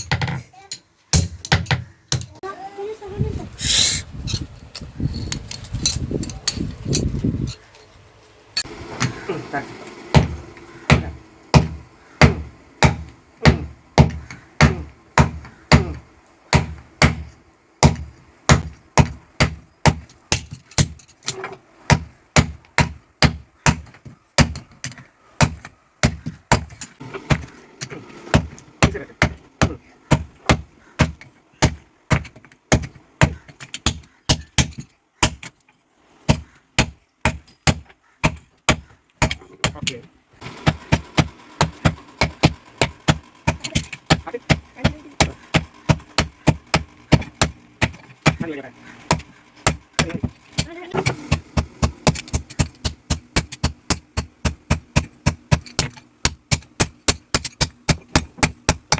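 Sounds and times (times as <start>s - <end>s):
hammer striking anvil: 10.1s - 21.0s, 40.6s - 48.4s.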